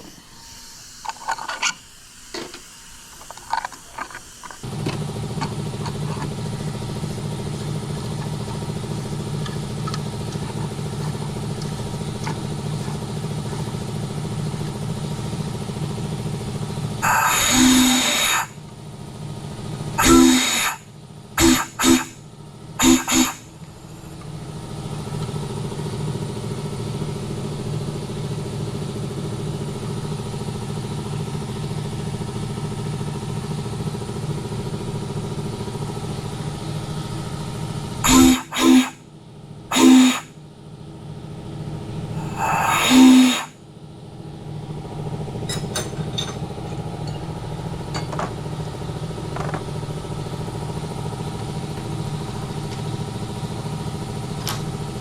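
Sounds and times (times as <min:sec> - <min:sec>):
air compressor running: 0:00.0 - 0:55.0
steam whistle blasts: 0:17.0 - 0:18.6, 0:20.0 - 0:22.2, 0:22.8 - 0:23.5, 0:38.0 - 0:39.0, 0:39.7 - 0:40.4, 0:42.2 - 0:43.6.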